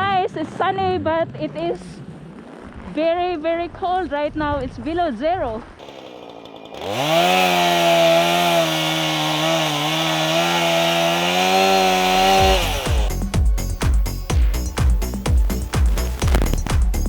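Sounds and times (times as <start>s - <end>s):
chainsaw engine revving: 5.8s - 13.2s
music with steady beat: 12.3s - 17.0s.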